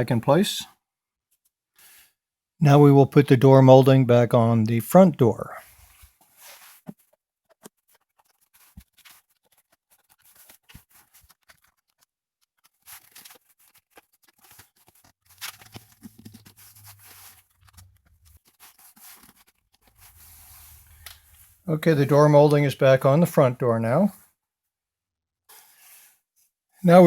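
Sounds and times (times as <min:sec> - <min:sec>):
scratchy rubbing of rubber molding: 0:05.7 - 0:22.3.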